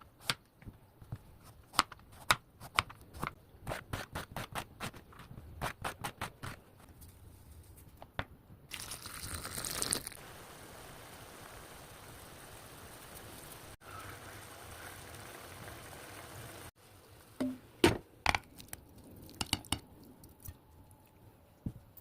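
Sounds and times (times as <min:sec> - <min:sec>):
steady hiss: 0:10.2 - 0:17.8.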